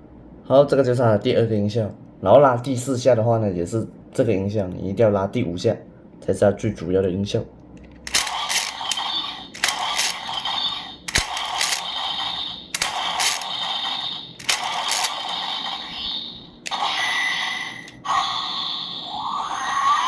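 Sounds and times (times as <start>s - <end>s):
sharp click: 7.8s - 10.5s, 11.1s - 11.9s, 12.8s - 13.6s, 14.4s - 15.3s
toy sword electronic noise bursts: 8.1s - 20.0s.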